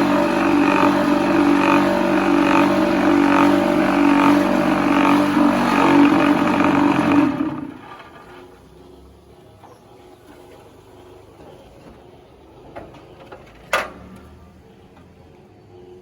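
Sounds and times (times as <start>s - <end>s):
concrete block machinery running: 0.0s - 8.7s.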